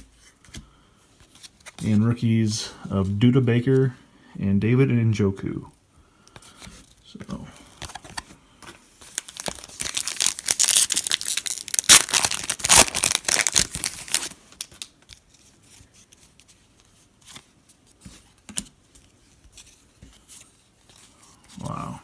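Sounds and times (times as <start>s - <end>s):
foil wrapper tearing and crinkling: 9.1s - 15.1s.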